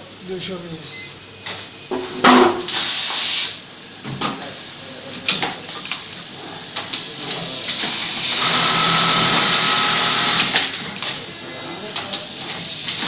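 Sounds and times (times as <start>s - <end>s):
sewing machine running whine: 8.0s - 10.6s.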